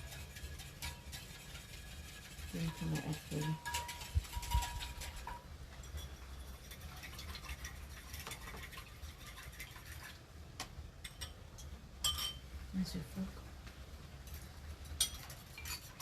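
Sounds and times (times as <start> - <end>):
utensils clicking against bowls: 0.0 - 9.5, 14.3 - 16.0.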